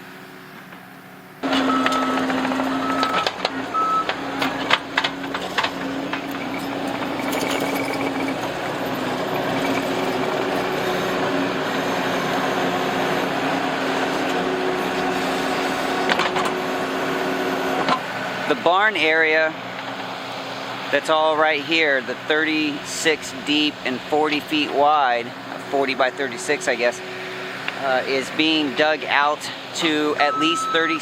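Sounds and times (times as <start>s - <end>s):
diesel engine running: 0.0s - 31.0s
backup alarm beeps: 1.1s - 4.2s, 30.1s - 31.0s.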